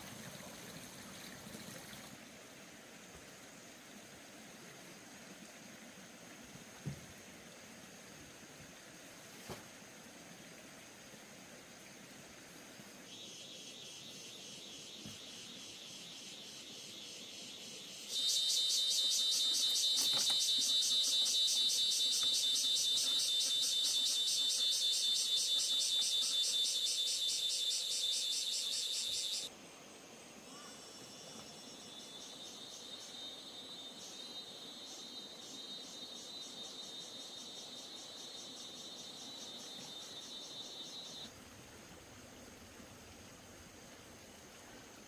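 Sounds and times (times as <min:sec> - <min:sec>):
insects chirring: 0:04.4 - 0:45.0.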